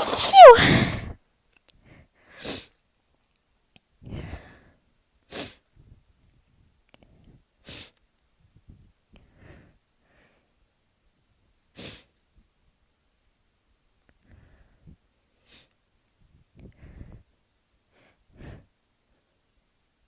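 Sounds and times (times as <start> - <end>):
person sneezing: 0.0 - 1.2
quiet breathing: 14.2 - 15.7, 16.6 - 17.3.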